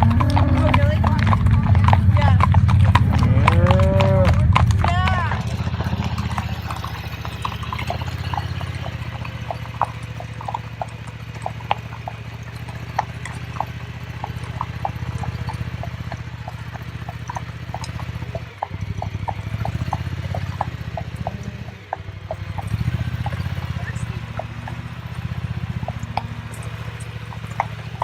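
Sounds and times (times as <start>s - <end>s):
steady low rumble: 0.0s - 8.4s
horse hooves clip-clopping: 0.0s - 28.0s.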